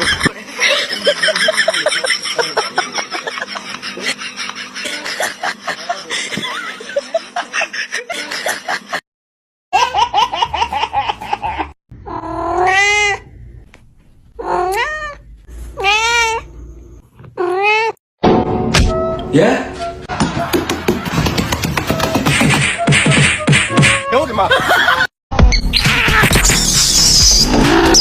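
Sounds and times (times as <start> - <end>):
cats caterwauling: 12.0 - 13.3, 14.4 - 15.2, 15.8 - 16.5, 17.4 - 18.0.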